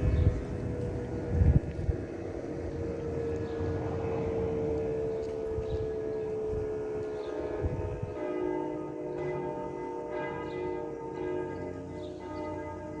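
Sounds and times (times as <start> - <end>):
steady siren tone: 0.0 - 8.2
bells ringing: 4.2 - 13.0.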